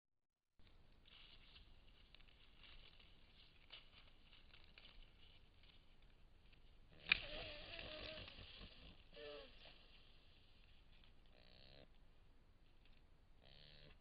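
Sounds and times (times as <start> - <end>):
faint rustling: 0.6 - 14.0
deer vocalizing: 7.0 - 9.8, 11.3 - 12.0, 13.4 - 14.0.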